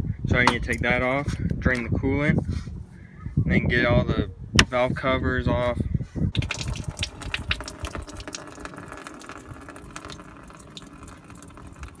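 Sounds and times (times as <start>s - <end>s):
liquid splashing into container: 6.4s - 12.0s.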